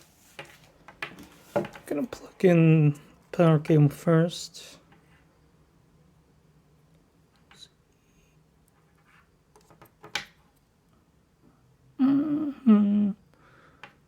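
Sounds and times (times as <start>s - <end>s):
person humming: 12.0s - 13.3s.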